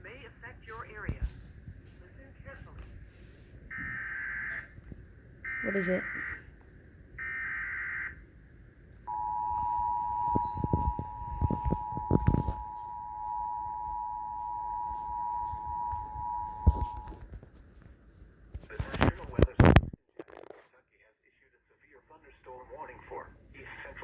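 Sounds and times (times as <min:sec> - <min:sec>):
two-tone attention signal: 0:09.1 - 0:17.2.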